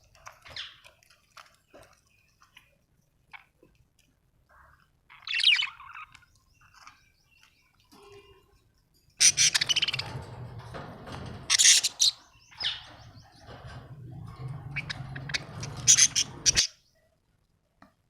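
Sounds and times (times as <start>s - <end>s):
budgerigars chirping and squawking: 0.5s - 0.8s, 5.1s - 6.9s, 9.2s - 16.8s.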